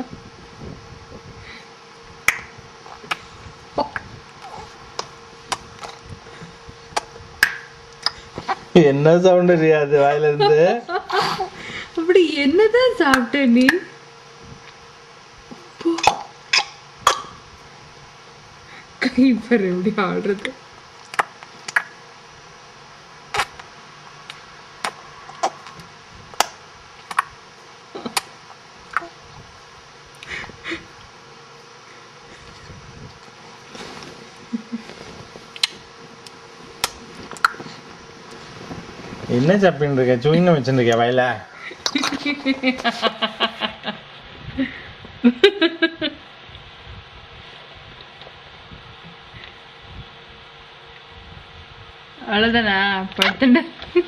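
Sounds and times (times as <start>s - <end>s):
tongue clicks: 2.3s - 3.2s, 7.0s - 8.2s, 21.0s - 21.9s, 36.8s - 37.6s.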